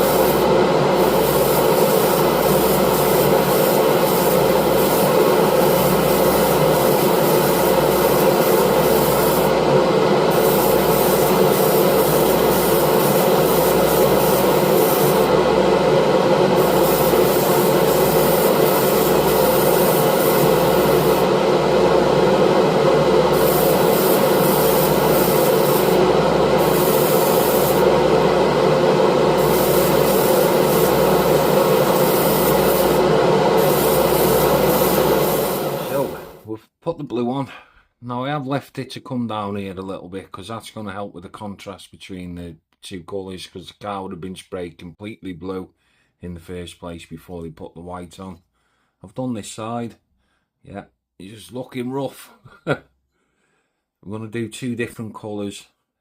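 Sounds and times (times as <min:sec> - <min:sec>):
airbrush hissing: 0:00.0 - 0:36.4
steady motor hum: 0:00.0 - 0:36.4.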